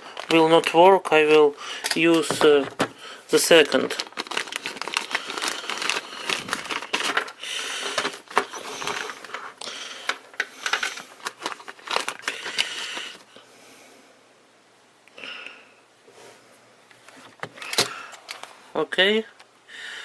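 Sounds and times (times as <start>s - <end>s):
packaging crinkling: 0.0s - 13.2s.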